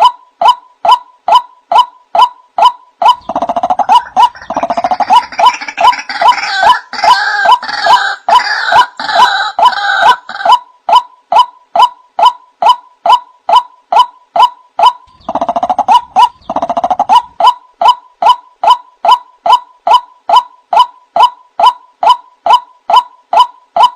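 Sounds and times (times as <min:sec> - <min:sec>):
croaking rattling bird chorus: 0:03.1 - 0:07.0, 0:15.0 - 0:17.5.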